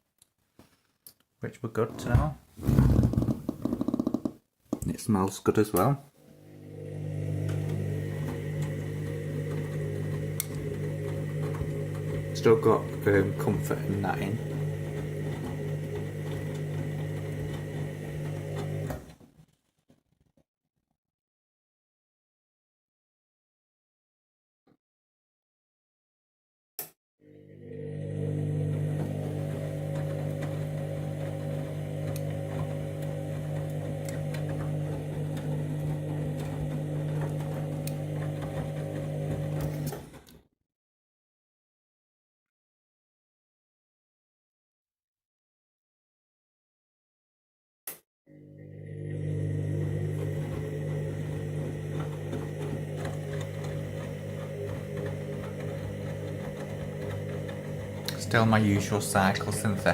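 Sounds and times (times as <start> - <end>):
washing machine motor hum: 6.2 - 19.2, 27.2 - 40.2, 48.3 - 59.9.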